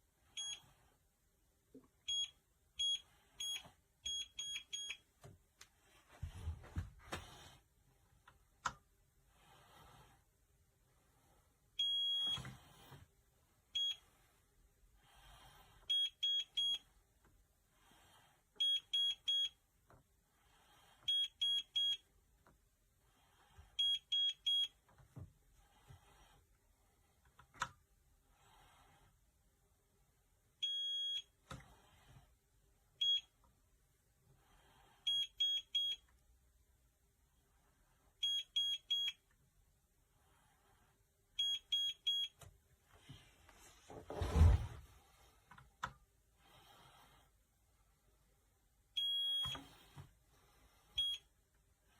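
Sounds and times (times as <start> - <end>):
keypad beeps: 2.1 - 5.0, 11.8 - 12.5, 18.6 - 19.6, 23.8 - 24.7, 35.1 - 36.0, 38.2 - 39.2, 41.4 - 42.4, 49.0 - 49.7.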